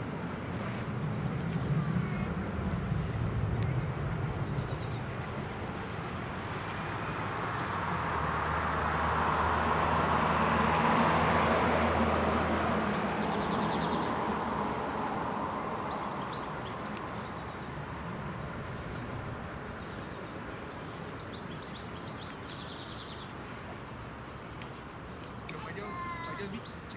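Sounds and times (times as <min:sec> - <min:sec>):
boat engine drone: 0:00.0 - 0:21.2.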